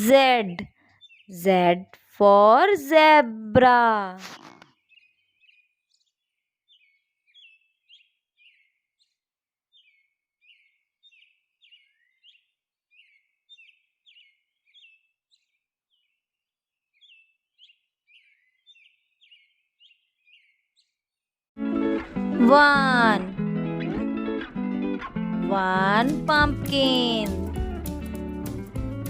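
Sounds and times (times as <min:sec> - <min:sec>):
faint bird chirping: 0:00.7 - 0:01.7, 0:04.3 - 0:16.2, 0:17.0 - 0:21.0.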